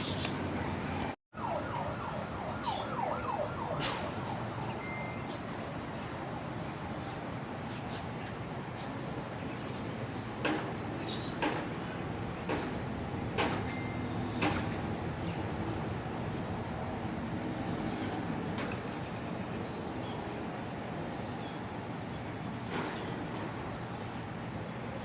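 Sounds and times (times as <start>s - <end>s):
washing machine running: 3.8s - 25.0s
sharp knocks: 11.4s - 11.8s, 12.4s - 13.8s.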